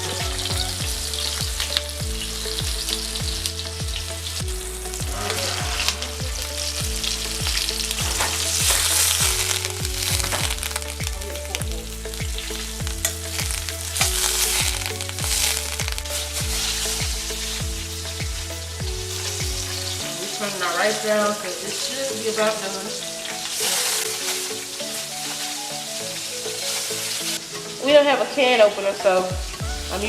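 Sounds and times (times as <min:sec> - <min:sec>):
music with deep bass beat: 0:00.0 - 0:20.3, 0:29.3 - 0:30.0
chicken frying in grease: 0:00.0 - 0:30.0.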